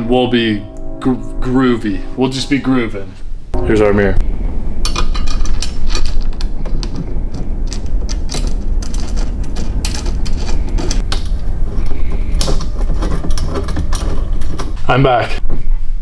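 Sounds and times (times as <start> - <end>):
steady low rumble: 0.0 - 12.6
metal parts knocking and clicking: 4.9 - 14.8.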